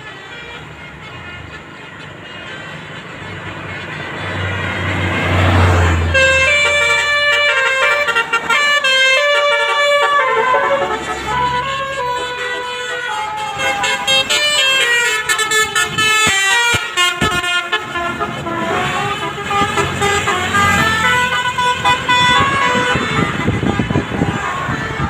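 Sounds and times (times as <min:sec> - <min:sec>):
bus engine running: 0:00.0 - 0:25.0
multi-tone bus horn: 0:00.0 - 0:25.0.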